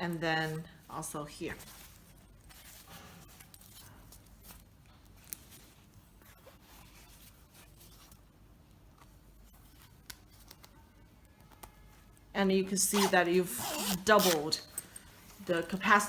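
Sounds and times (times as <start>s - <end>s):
faint rubbing of fabric: 0.4s - 8.3s
zippers: 12.8s - 14.7s.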